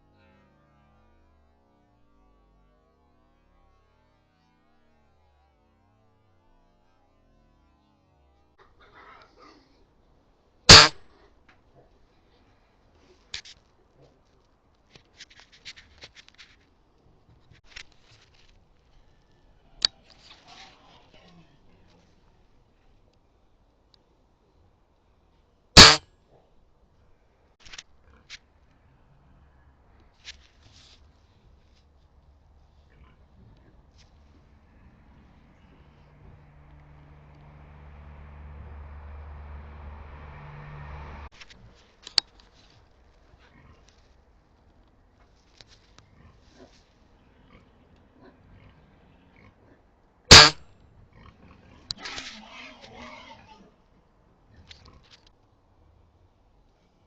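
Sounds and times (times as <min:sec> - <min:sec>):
air rifle shot: 0:10.7 - 0:11.0, 0:25.8 - 0:26.0, 0:50.3 - 0:50.6
sharp loud crack: 0:10.7 - 0:11.0, 0:25.8 - 0:26.0, 0:50.3 - 0:50.6
low engine-like hum: 0:33.4 - 0:42.1.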